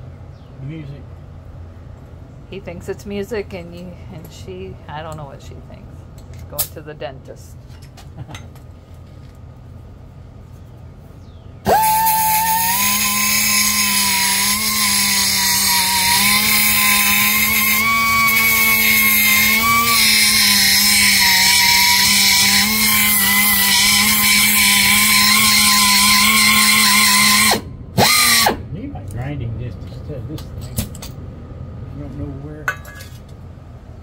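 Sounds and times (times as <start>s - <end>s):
grinder cutting metal: 11.7s - 28.6s.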